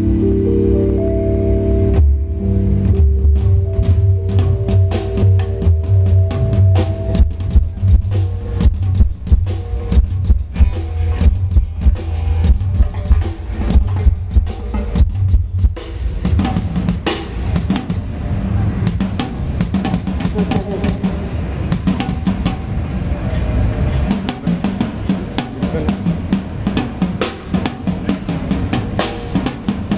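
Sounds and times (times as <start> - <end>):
heavy low bass: 0.0 - 19.5.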